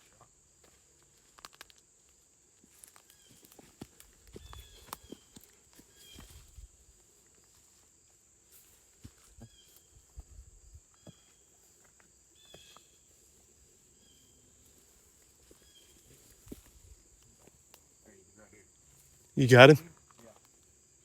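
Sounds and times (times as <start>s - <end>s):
high insect drone: 0.0s - 21.0s
soft footsteps or twig snaps: 1.0s - 6.5s, 16.3s - 17.8s.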